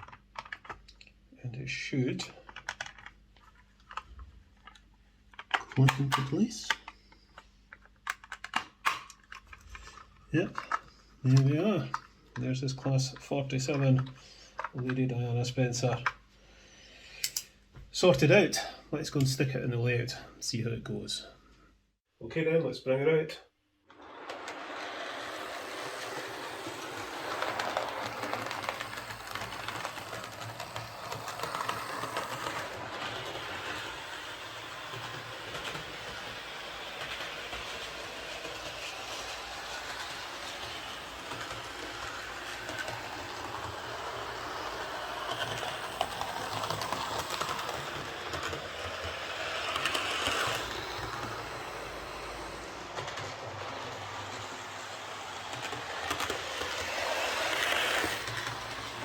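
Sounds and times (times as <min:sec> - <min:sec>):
model train motor whirr: 0:23.9 - 0:59.0
wheels clicking over track: 0:23.9 - 0:59.0.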